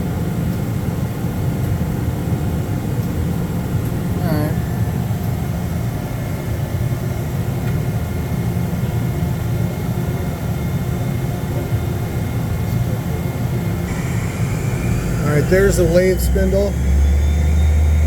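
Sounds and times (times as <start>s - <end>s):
faint whining tones: 13.8s - 18.0s
lathe machine hum: 13.9s - 18.0s.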